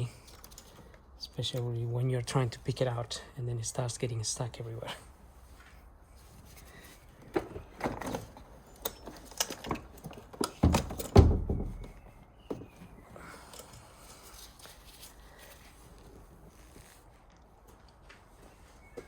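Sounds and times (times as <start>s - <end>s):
car battery and cables knocking: 9.8s - 12.7s.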